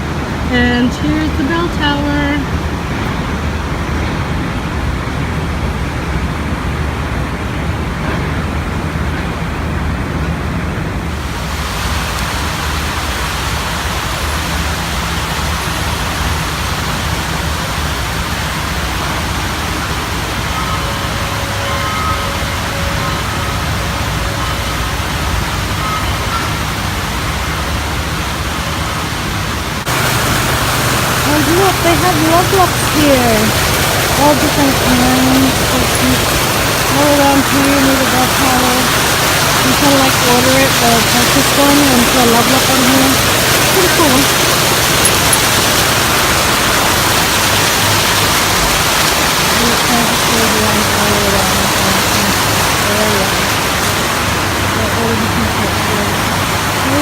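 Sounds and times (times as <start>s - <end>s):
steady rushing outdoor noise: 0.0s - 57.0s.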